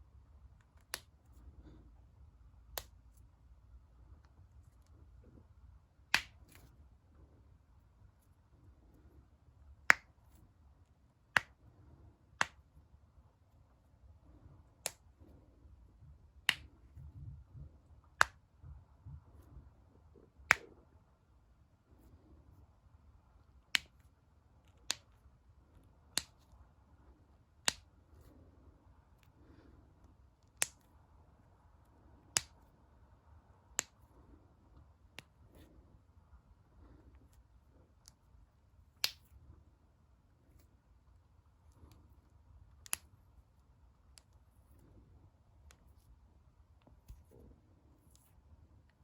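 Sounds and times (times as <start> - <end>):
knuckles cracking: 20.4 - 20.8.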